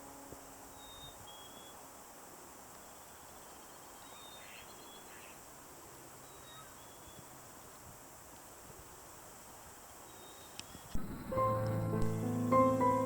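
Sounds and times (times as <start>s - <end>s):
distant songbird calls: 0.7s - 1.8s, 2.8s - 5.5s, 6.2s - 7.4s, 9.8s - 12.2s.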